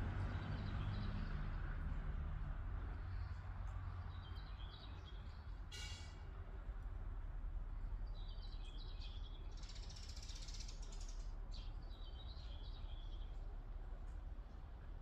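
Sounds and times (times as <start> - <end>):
small birds chirping: 8.0 - 13.6.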